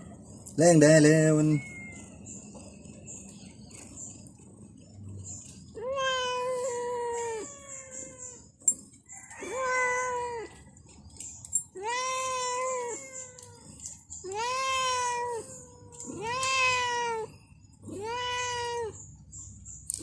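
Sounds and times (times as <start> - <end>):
cat meowing: 1.4 - 2.2, 5.8 - 8.5, 9.4 - 10.6, 11.7 - 19.0.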